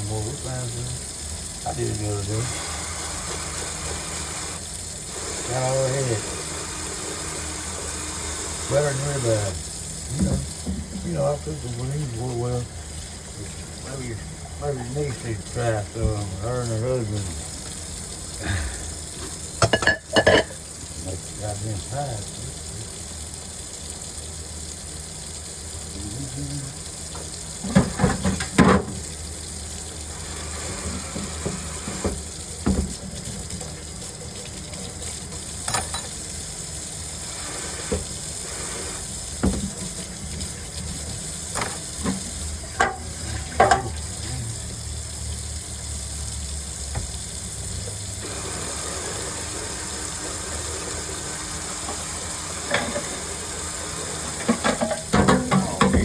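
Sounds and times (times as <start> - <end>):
steady kitchen hiss: 0.0 - 56.0
kitchenware knocking and clanking: 19.6 - 20.6, 27.7 - 29.0, 35.7 - 36.2, 42.8 - 44.0, 54.4 - 56.0.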